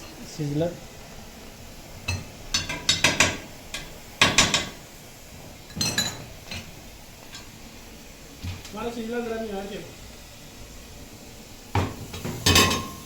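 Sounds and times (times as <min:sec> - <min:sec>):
dishes and metal clattering: 0:05.7 - 0:06.7, 0:11.8 - 0:13.0.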